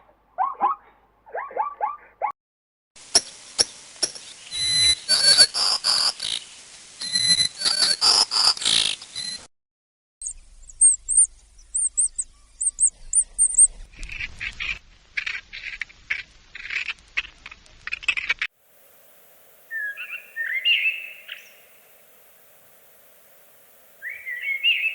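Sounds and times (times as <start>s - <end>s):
high thin bird chirps: 3.2s - 9.4s, 10.2s - 15.8s, 19.6s - 23.1s, 23.7s - 24.9s.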